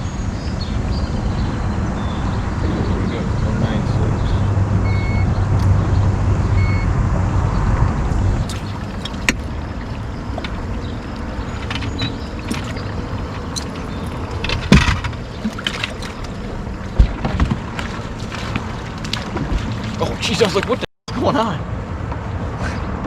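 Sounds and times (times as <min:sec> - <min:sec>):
water around boat: 0:00.0 - 0:23.0
wind: 0:00.0 - 0:23.0
knocks on boat: 0:08.4 - 0:20.8.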